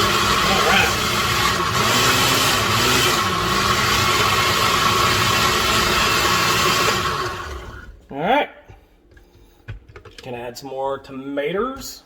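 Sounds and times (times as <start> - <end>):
blender motor churning: 0.0 - 8.0.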